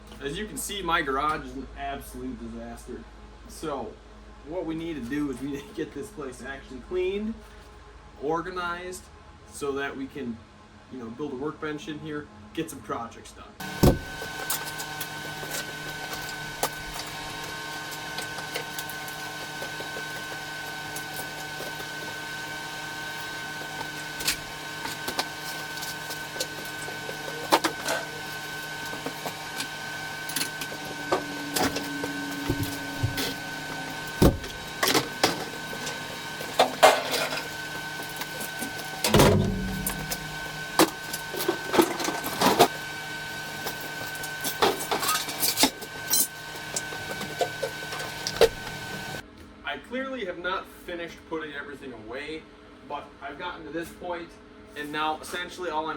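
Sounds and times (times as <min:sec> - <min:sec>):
electrical hum: 0:13.6 - 0:49.2
high whine: 0:13.6 - 0:49.2.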